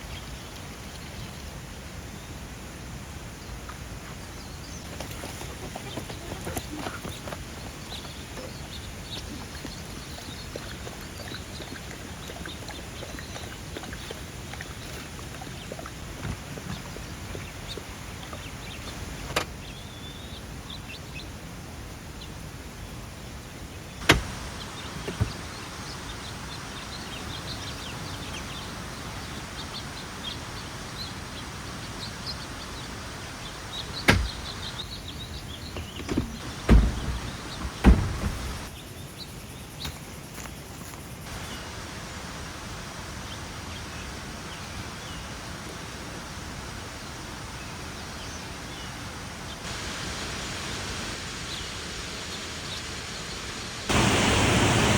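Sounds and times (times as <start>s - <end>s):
birds chirping: 3.3s - 21.4s, 23.6s - 42.1s
sharp knocks and clunks: 24.0s - 25.6s, 34.0s - 34.8s, 35.7s - 38.7s.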